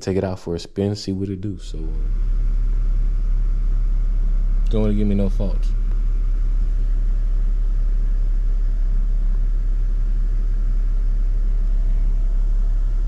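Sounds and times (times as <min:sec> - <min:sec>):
car engine running: 0:01.7 - 0:13.0.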